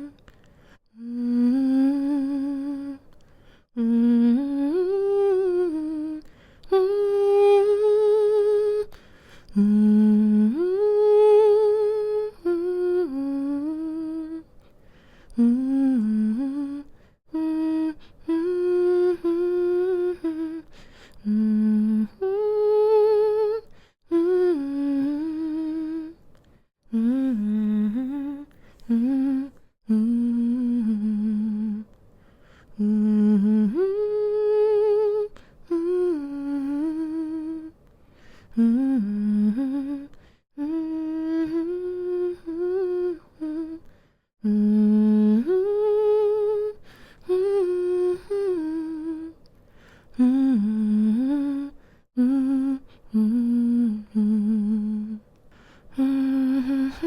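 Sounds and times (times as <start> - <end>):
woman humming a lullaby: 0.0 - 0.2, 1.0 - 3.0, 38.6 - 43.8.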